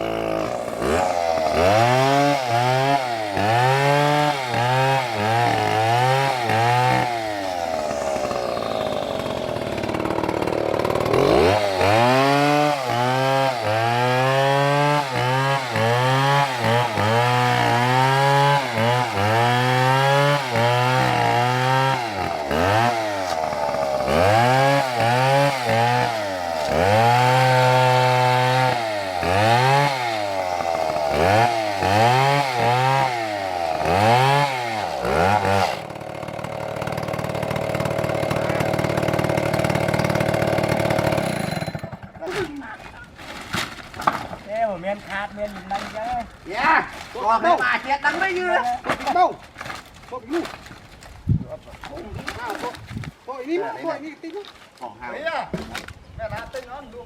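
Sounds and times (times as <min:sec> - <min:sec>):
chainsaw engine revving: 0:00.0 - 0:42.5.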